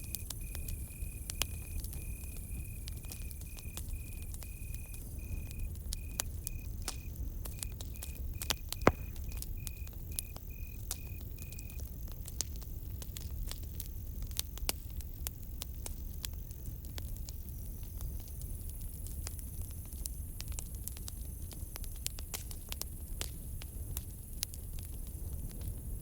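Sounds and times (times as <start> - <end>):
high insect trill: 0.0 - 12.0
cricket chirping: 0.0 - 12.7
campfire crackling and popping: 0.0 - 26.0
low rumble of fire: 0.0 - 26.0.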